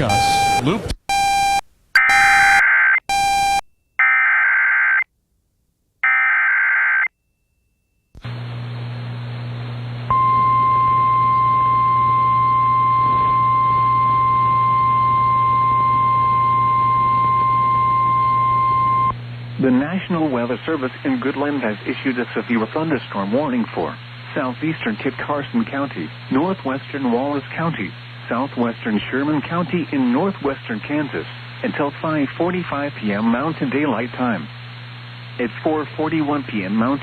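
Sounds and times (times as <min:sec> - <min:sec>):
buzzy digital header bursts: 0:00.0 - 0:00.9
radio static with low hum: 0:00.0 - 0:01.5, 0:08.2 - 0:10.8, 0:11.5 - 0:37.0
warning alarm tone: 0:00.0 - 0:05.0, 0:10.1 - 0:19.1.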